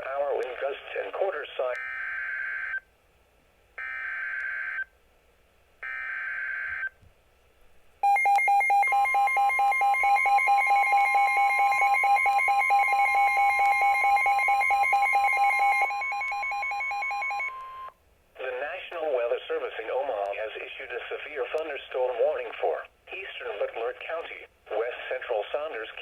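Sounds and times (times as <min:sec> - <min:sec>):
higher steady warning tone: 0:08.0 - 0:18.0.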